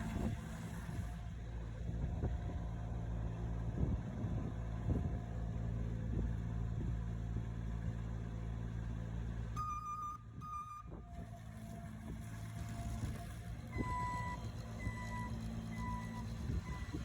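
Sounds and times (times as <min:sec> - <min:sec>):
diesel engine running: 0:00.0 - 0:17.0
backup alarm beeps: 0:09.6 - 0:10.9.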